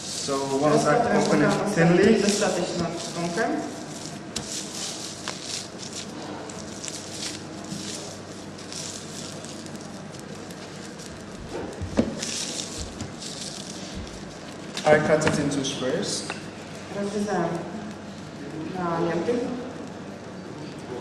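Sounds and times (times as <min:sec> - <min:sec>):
rolling pin swishing on dough: 0:00.0 - 0:14.7.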